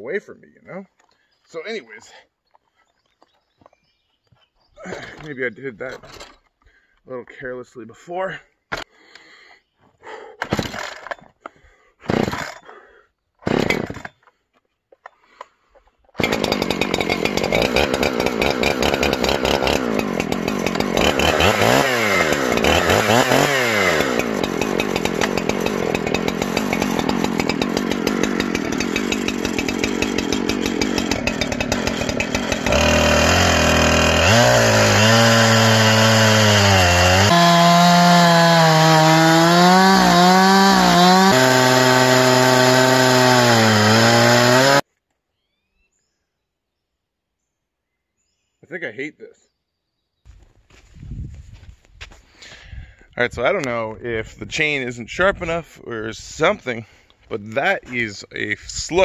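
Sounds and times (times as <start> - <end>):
chainsaw cutting through log: 10.1 - 14.4, 16.1 - 44.9.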